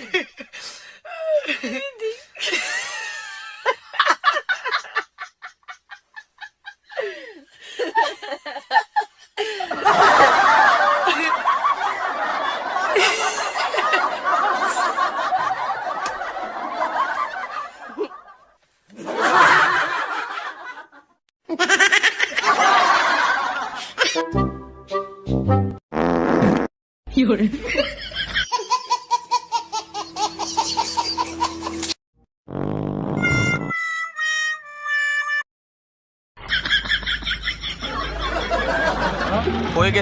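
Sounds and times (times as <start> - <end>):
people laughing: 0.0 - 0.5, 1.1 - 24.3, 27.6 - 31.9, 36.4 - 40.0.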